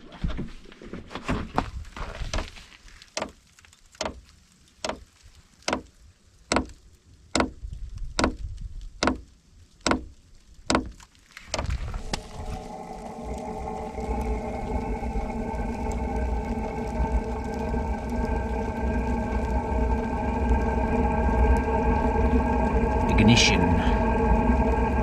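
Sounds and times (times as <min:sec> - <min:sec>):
fan humming: 0:11.8 - 0:25.0.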